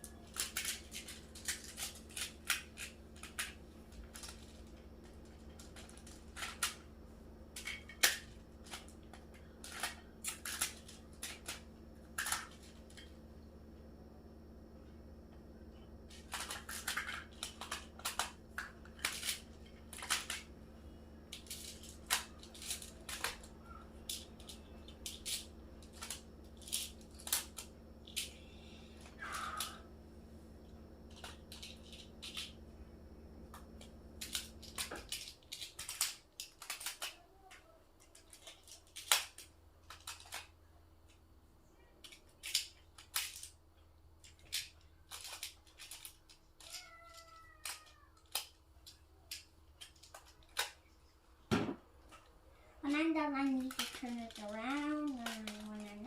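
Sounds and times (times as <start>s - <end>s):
low steady hum: 0.0s - 56.0s
plastic tiles clicking together: 44.2s - 50.8s, 53.5s - 56.0s.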